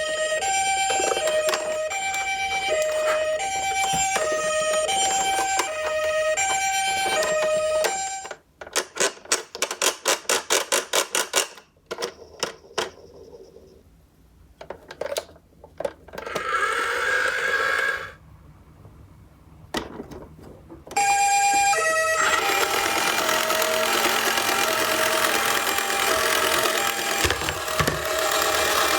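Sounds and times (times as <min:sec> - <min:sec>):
toy siren two-tone beeping: 0:00.0 - 0:08.4, 0:21.0 - 0:28.9.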